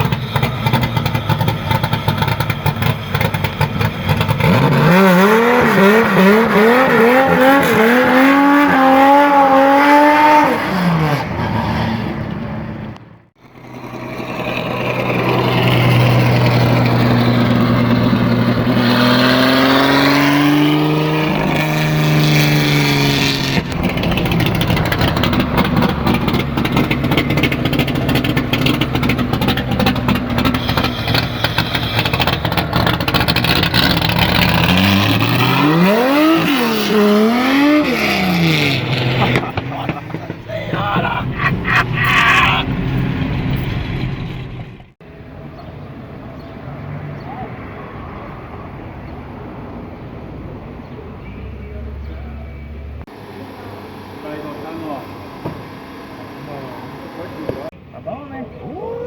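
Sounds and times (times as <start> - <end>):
car engine revving hard: 0.0 - 12.3, 13.6 - 44.9.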